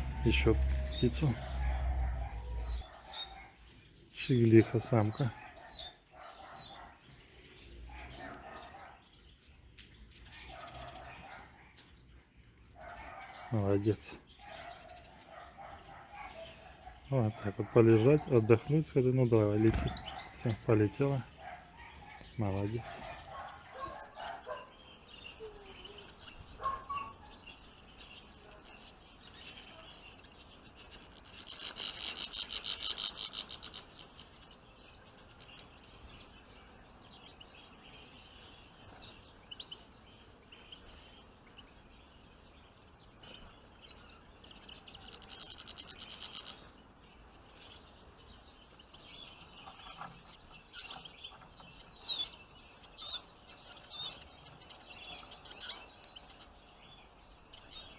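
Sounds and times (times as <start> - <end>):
songbirds chirping: 0.0 - 57.9
bird fast trill: 19.7 - 23.2.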